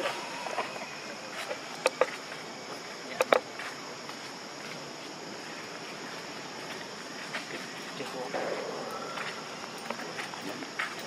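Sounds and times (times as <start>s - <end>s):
insects droning: 0.0s - 11.0s.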